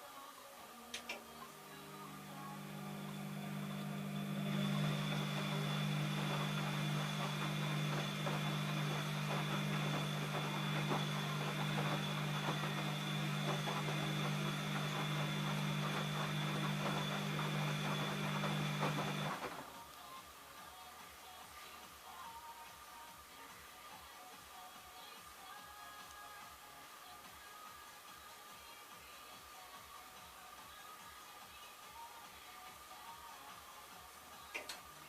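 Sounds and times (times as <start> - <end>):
washing machine running: 1.4 - 19.7.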